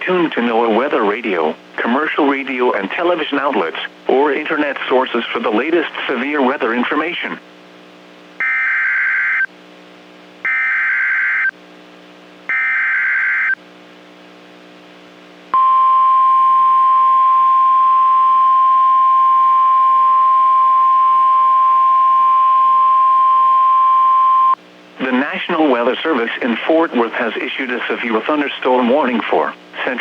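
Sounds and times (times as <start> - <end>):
steady warning alarm tone: 8.4 - 9.5, 10.5 - 11.5, 12.5 - 13.6, 15.6 - 24.6.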